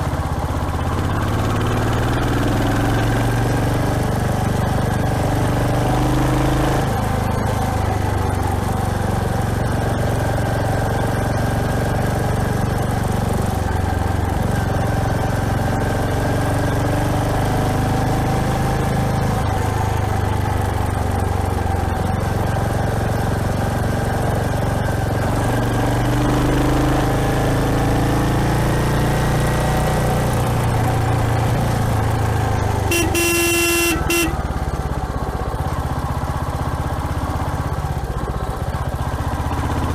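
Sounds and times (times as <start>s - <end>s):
motorcycle engine running: 0.0s - 39.9s
vehicle horn: 32.9s - 34.5s.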